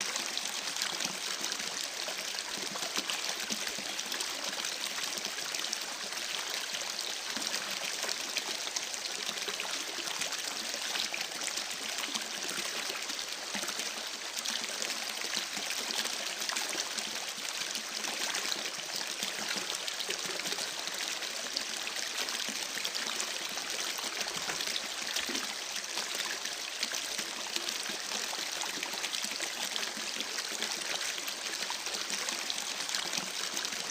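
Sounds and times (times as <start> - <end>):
small trickles and splashes: 0.0 - 33.9
stream babbling: 17.5 - 33.9.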